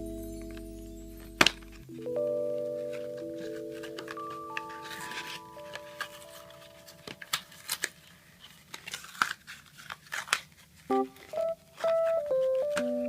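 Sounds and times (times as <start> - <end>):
soft piano music: 0.0 - 7.8, 10.9 - 13.0.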